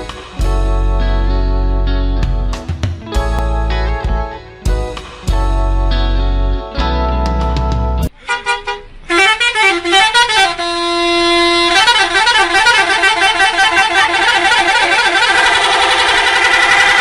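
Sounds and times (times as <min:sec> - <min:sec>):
musical bus air horn tune: 0:08.1 - 0:17.0.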